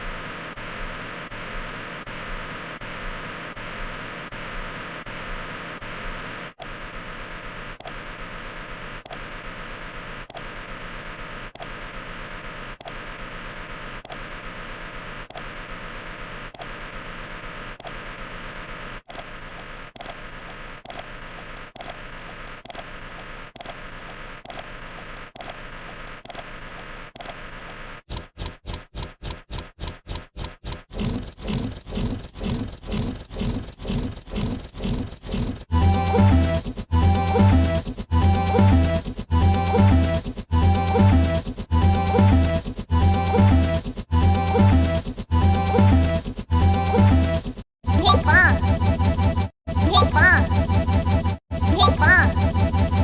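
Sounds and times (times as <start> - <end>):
clicks: 9.0 - 9.3, 10.3 - 10.5, 11.6 - 11.8, 12.8 - 13.0, 14.0 - 14.3, 15.3 - 15.5, 16.5 - 16.8, 19.1 - 53.0.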